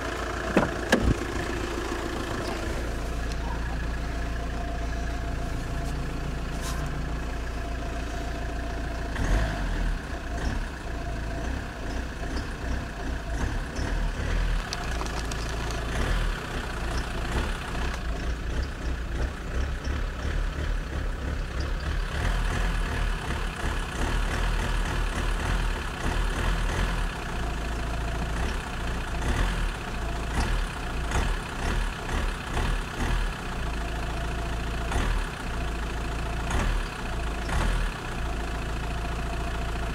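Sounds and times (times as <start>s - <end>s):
diesel engine idling: 0.0s - 39.9s.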